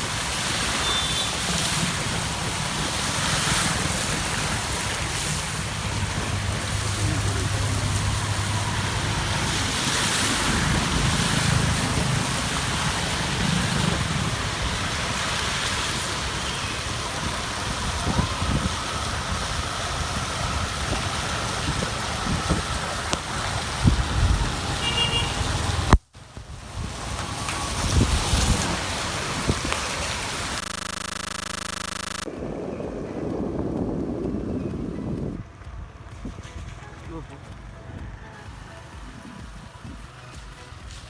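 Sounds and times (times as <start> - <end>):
heavy rain: 0.0 - 34.9
vehicles on wet road: 0.0 - 41.0.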